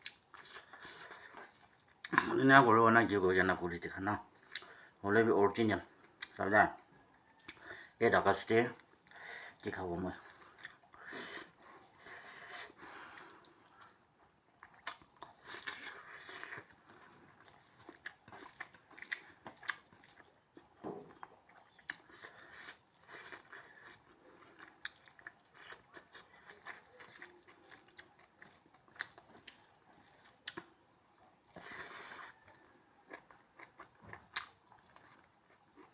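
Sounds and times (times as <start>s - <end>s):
person chewing food: 0.0s - 2.7s, 4.3s - 5.0s, 6.0s - 6.4s, 7.2s - 8.0s, 8.7s - 35.9s.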